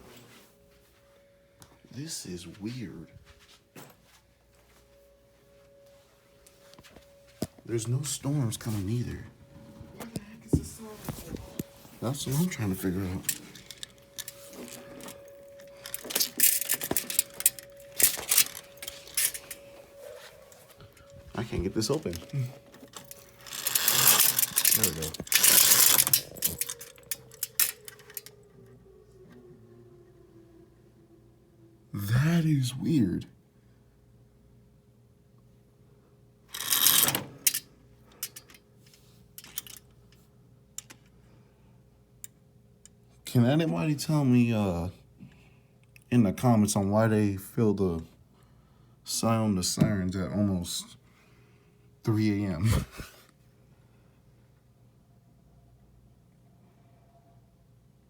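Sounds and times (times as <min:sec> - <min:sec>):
distant tornado siren: 0:04.7 - 0:33.0
window shutter rattling and clicking: 0:12.3 - 0:28.4, 0:36.6 - 0:37.6
rustling scrape: 0:13.2 - 0:28.2.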